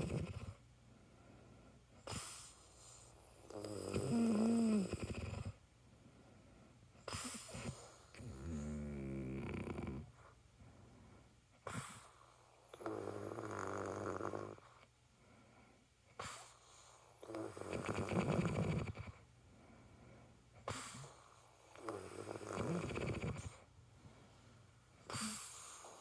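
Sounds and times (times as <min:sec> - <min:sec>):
woman snoring: 0:00.0 - 0:00.5, 0:03.5 - 0:05.6, 0:07.3 - 0:10.1, 0:12.8 - 0:14.6, 0:17.2 - 0:19.1, 0:21.8 - 0:23.6.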